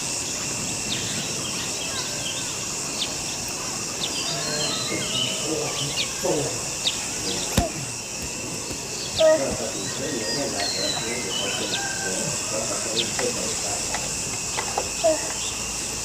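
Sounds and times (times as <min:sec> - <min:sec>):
high insect drone: 0:00.0 - 0:16.0
bird chirps: 0:04.0 - 0:12.0.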